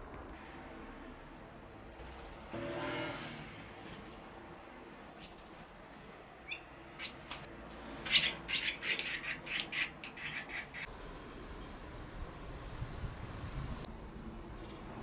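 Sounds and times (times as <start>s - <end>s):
barn swallow twittering: 6.4s - 10.9s.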